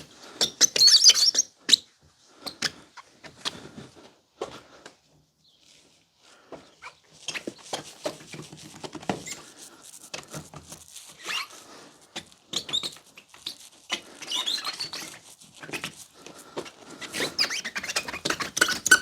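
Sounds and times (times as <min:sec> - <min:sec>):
short high squeaks: 0:00.4 - 0:01.8, 0:10.8 - 0:16.1, 0:16.9 - 0:19.0
pad rubbing on plastic: 0:06.8 - 0:19.0.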